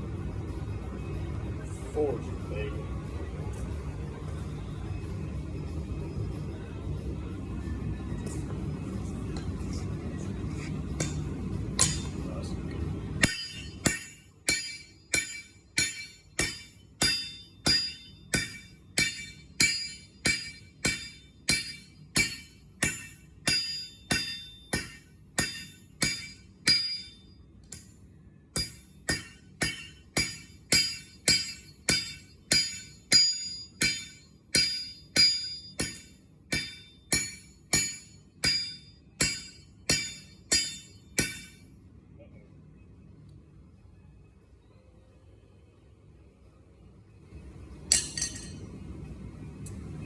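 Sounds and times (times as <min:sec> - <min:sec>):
hammer ringing on anvil: 0:11.0 - 0:12.2, 0:13.2 - 0:27.9, 0:28.6 - 0:41.6, 0:47.9 - 0:48.7.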